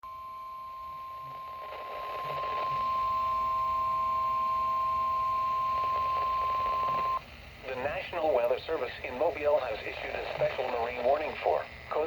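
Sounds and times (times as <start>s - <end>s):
steady warning alarm tone: 0.1s - 7.2s.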